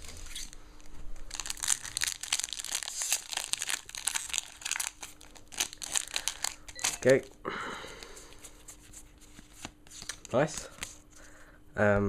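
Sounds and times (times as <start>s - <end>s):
foil wrapper crinkling and tearing: 1.2s - 7.4s.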